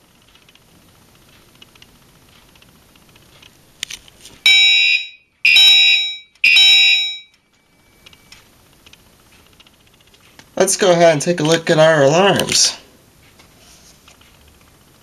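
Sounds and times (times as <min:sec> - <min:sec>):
fire alarm horn blasts: 0:04.5 - 0:07.3.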